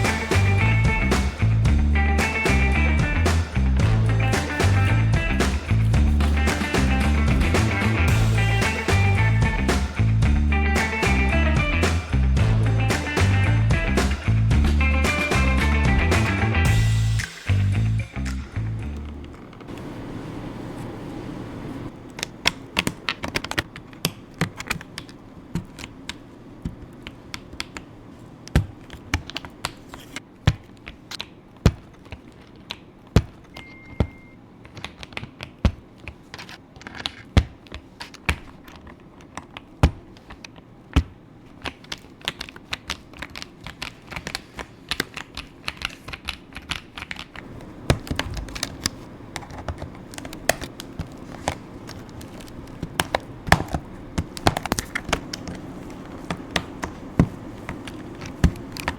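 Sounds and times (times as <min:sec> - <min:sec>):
mechanical keyboard clicks: 0:41.6 - 0:55.6.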